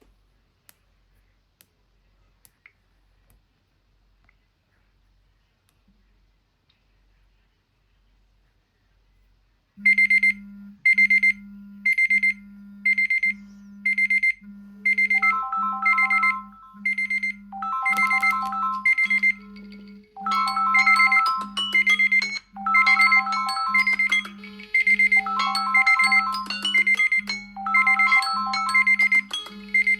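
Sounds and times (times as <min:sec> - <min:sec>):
high ringtone beep: 0:12.9 - 0:29.9
chiming ringtone melody: 0:14.9 - 0:29.9.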